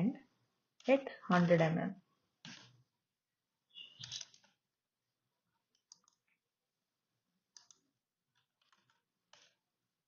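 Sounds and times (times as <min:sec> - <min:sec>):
keyboard and mouse clicking: 0:03.8 - 0:04.6, 0:05.7 - 0:06.4, 0:07.5 - 0:09.6.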